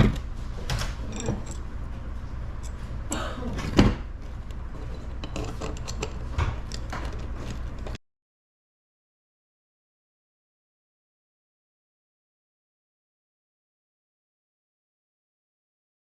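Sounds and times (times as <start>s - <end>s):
steady low hum: 0.0s - 8.0s
clinks and knocks of metal tools: 1.0s - 1.7s, 5.0s - 8.0s.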